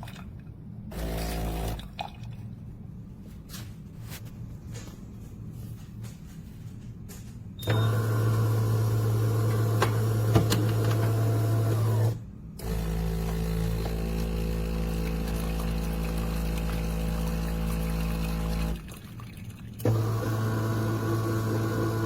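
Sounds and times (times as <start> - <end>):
espresso machine motor humming: 0.9 - 1.8, 7.6 - 18.8, 19.8 - 22.0.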